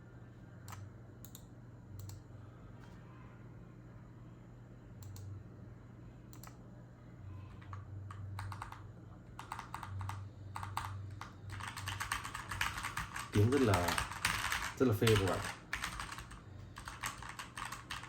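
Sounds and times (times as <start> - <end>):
mechanical keyboard typing: 7.6 - 18.0.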